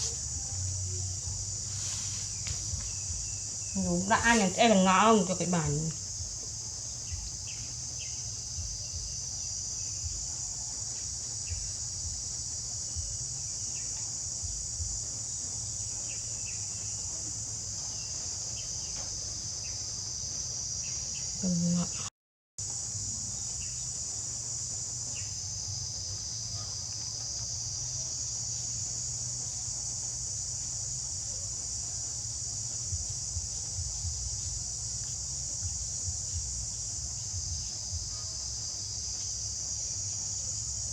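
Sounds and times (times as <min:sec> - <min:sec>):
low steady hum: 0:00.0 - 0:21.8
insects chirping: 0:00.0 - 0:40.9.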